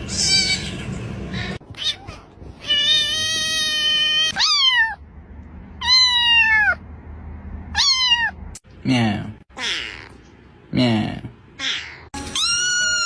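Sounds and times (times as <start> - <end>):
cat meowing: 1.7 - 5.0, 5.8 - 6.8, 7.8 - 8.4, 9.6 - 10.2, 11.6 - 13.0.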